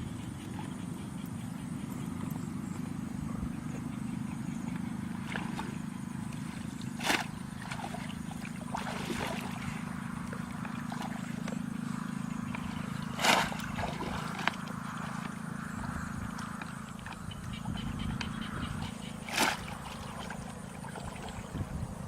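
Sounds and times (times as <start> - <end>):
steady low hum: 0.0 - 22.0
splashes in water: 5.2 - 11.6, 12.5 - 16.8, 19.2 - 21.6.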